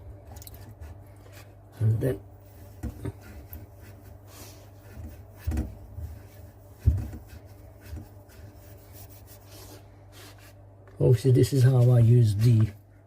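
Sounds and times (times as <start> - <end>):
abrasive rubbing on copper pipe: 2.5 - 10.5.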